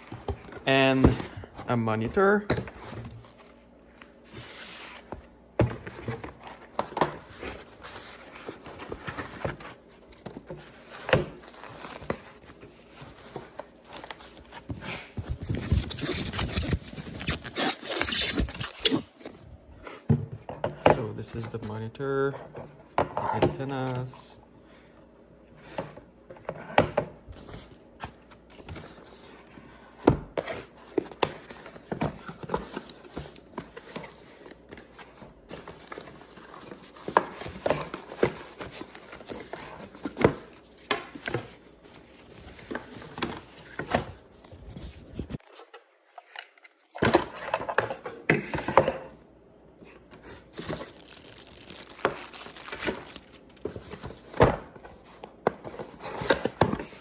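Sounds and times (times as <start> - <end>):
wrapping crinkling and tearing: 15.4 - 19.2, 50.7 - 53.6.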